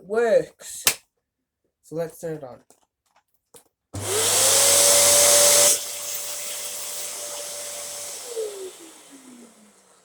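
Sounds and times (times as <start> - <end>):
vacuum cleaner motor whine: 4.0 - 10.0.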